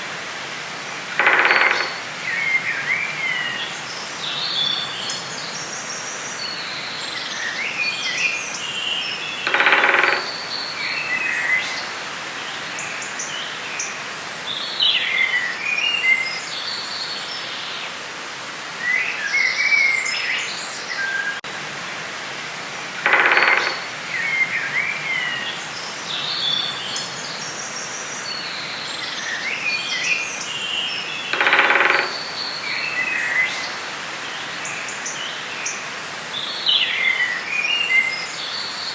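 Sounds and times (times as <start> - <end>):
louder lower bird call: 1.2 - 2.5, 23.0 - 24.8
songbirds chirping and trilling: 1.2 - 18.0, 22.8 - 38.9.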